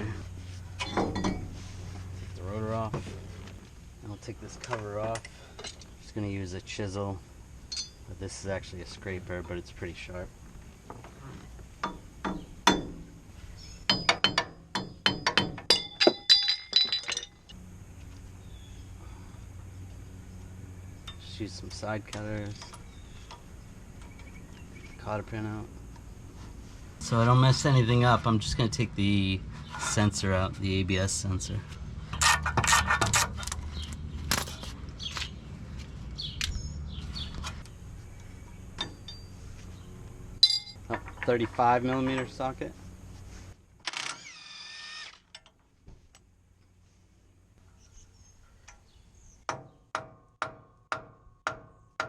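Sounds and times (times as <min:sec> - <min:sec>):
bird chirps: 0:22.6 - 0:25.1, 0:33.7 - 0:40.7, 0:47.7 - 0:49.5
hand tools clicking and scraping: 0:32.1 - 0:35.3.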